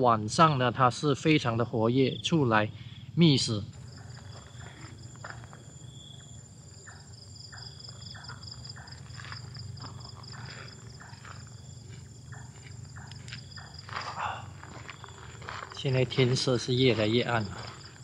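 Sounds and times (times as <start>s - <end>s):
crickets and insects trilling: 0.0s - 18.0s.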